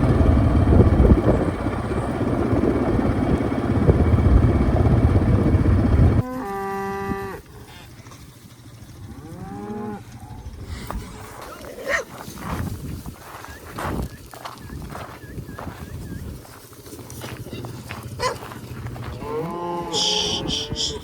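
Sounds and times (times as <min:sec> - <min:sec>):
vehicle engine rumble: 0:00.0 - 0:06.3, 0:07.4 - 0:21.0
cattle mooing: 0:06.2 - 0:07.5, 0:09.1 - 0:10.5, 0:19.1 - 0:21.0.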